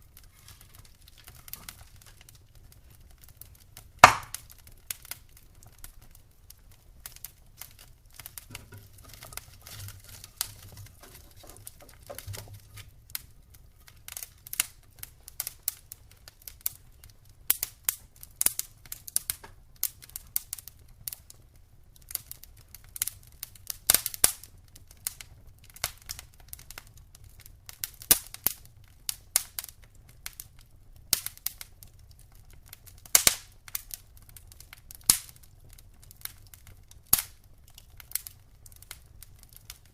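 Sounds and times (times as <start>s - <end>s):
faint hiss: 0.0s - 21.0s
wood fire crackling: 0.0s - 39.9s.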